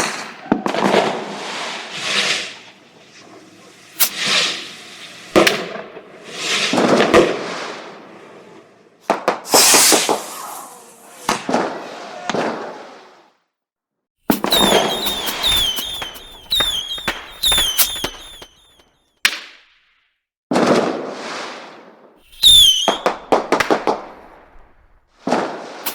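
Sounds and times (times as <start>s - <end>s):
whistling fireworks falling in pitch: 0.0s - 8.5s, 9.1s - 13.4s, 14.3s - 19.6s, 20.7s - 25.9s
firework bangs with crackling hiss: 0.0s - 13.2s, 14.3s - 19.8s, 20.5s - 25.9s
rapid firework cracks: 3.9s - 8.1s, 9.0s - 13.0s, 14.3s - 25.9s.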